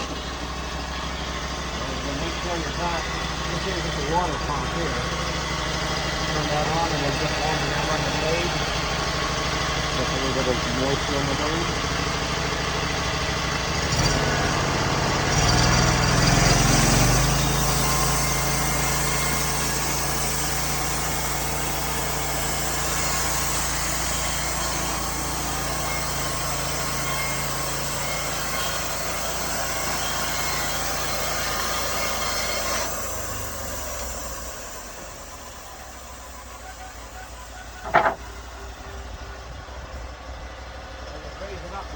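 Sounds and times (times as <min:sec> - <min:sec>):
sawmill petrol engine running: 0:00.0 - 0:41.9.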